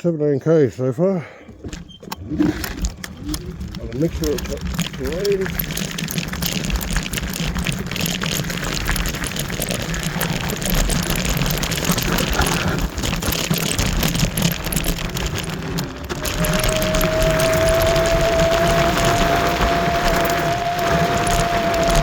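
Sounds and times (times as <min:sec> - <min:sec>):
scooter rattling and rumbling: 0:01.5 - 0:22.0
wind rushing over microphone: 0:13.8 - 0:22.0
steady whine: 0:16.0 - 0:22.0.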